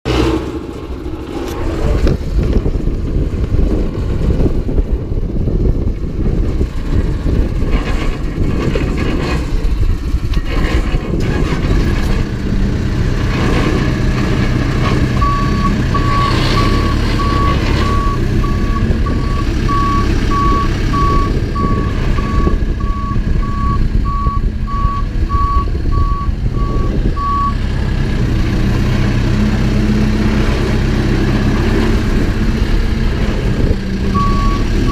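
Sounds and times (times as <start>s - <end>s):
diesel engine under load: 0.0s - 34.9s
reversing alarm beeps: 15.2s - 27.6s, 34.2s - 34.9s.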